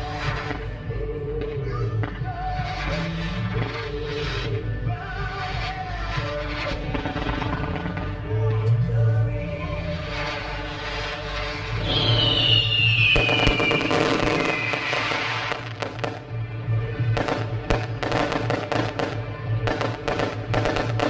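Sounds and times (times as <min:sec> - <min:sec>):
sharp firework crackling: 0:00.0 - 0:01.1, 0:02.3 - 0:08.4, 0:09.0 - 0:21.0
background music: 0:00.0 - 0:21.0
fireworks going off: 0:00.0 - 0:21.0
falling whistling tone: 0:11.7 - 0:15.7.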